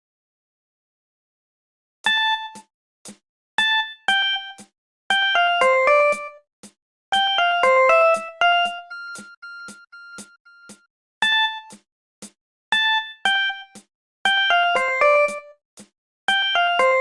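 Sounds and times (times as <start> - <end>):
synthesized ringtone melody: 2.1 - 2.6, 3.6 - 6.4, 7.1 - 11.8, 12.8 - 15.6, 16.3 - 17.0
steady ticking beat: 2.1 - 17.0.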